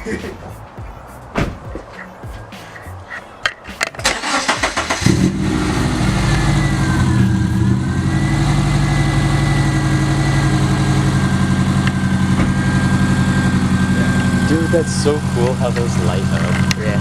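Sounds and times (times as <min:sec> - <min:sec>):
car engine idling: 0:00.0 - 0:17.0
engine starter cranking: 0:03.8 - 0:05.5.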